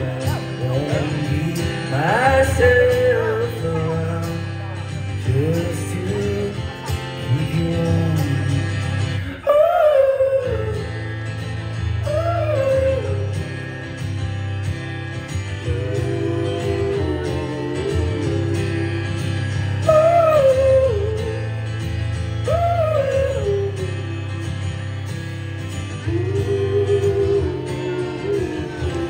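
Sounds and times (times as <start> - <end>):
bass: 0.0 - 29.0
guitar: 0.0 - 29.0
person singing: 15.6 - 21.6, 22.4 - 24.8, 26.0 - 29.0.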